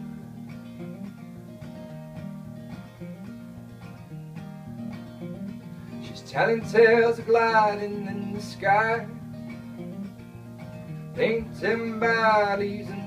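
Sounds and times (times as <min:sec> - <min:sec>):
acoustic guitar chords: 0:00.0 - 0:13.0
person singing: 0:06.0 - 0:09.2, 0:11.1 - 0:13.0.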